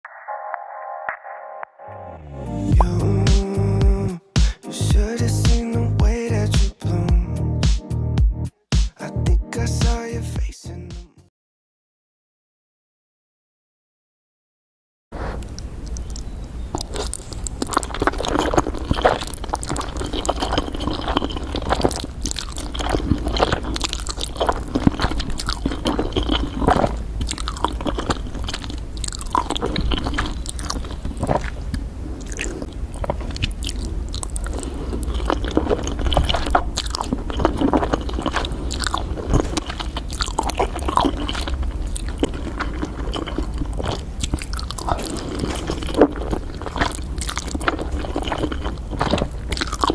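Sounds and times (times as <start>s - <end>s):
low steady hum: 1.9s - 8.4s, 15.3s - 49.9s
person chewing food: 15.2s - 49.9s.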